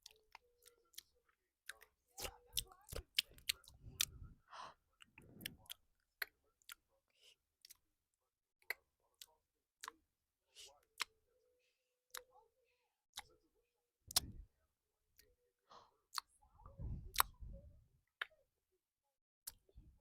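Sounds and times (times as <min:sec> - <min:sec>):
soft breathy sounds: 0:00.0 - 0:07.9, 0:14.1 - 0:14.6, 0:15.2 - 0:18.5, 0:19.5 - 0:20.0
wet mouth clicks and smacks: 0:14.1 - 0:14.4, 0:17.1 - 0:17.4.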